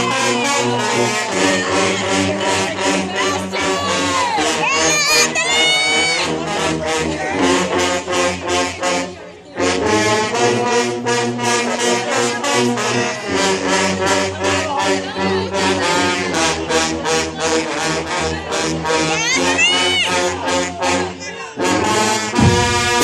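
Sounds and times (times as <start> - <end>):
sustained brass chords: 0.0 - 5.4, 6.2 - 23.0
drumline beat: 21.8 - 23.0.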